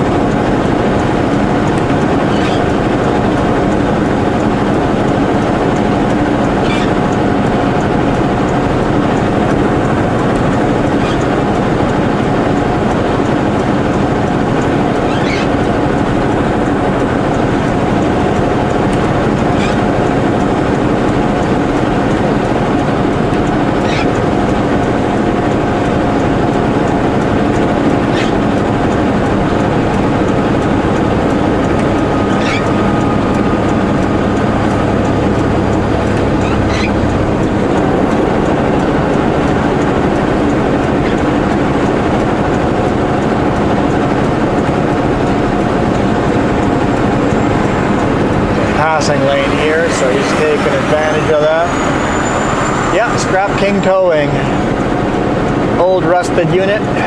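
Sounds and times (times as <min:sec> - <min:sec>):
truck engine and road noise: 0:00.0 - 0:57.0
short high squeak: 0:02.3 - 0:02.8, 0:06.6 - 0:07.0, 0:11.0 - 0:11.2, 0:15.1 - 0:15.6, 0:19.6 - 0:19.8, 0:23.8 - 0:24.2, 0:28.1 - 0:28.4, 0:32.2 - 0:32.8, 0:36.4 - 0:37.0.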